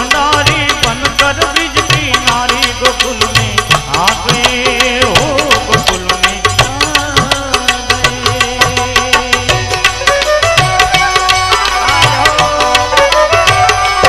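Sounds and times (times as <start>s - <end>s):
quick steady drum beat: 0.0s - 14.0s
sustained held notes: 6.8s - 14.0s.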